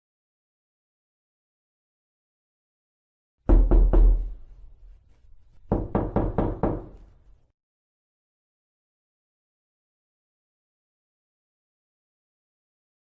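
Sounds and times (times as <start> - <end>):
knocking on wooden door: 3.5 - 4.4, 5.7 - 7.0.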